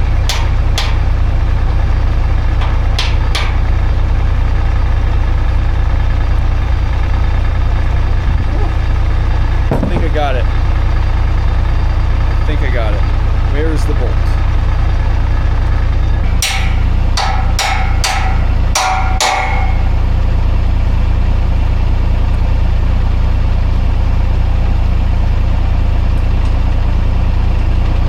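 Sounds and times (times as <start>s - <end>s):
hammer blows on metal: 0.0s - 1.2s, 2.6s - 3.9s, 16.2s - 20.3s
engine idling: 0.0s - 28.0s.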